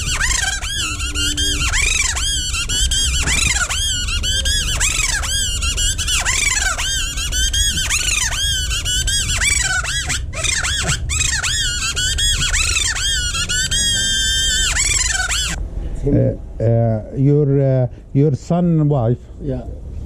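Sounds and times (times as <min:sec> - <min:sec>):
reed whistle shrill chirps: 0:00.0 - 0:15.6.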